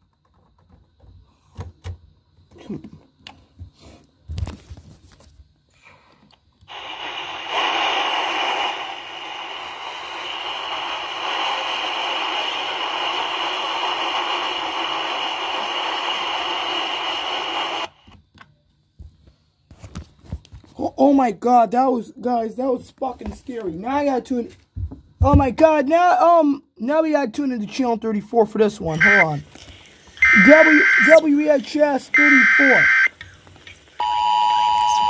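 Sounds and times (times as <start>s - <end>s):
tv static hiss: 6.7s - 18.2s, 28.6s - 35.0s.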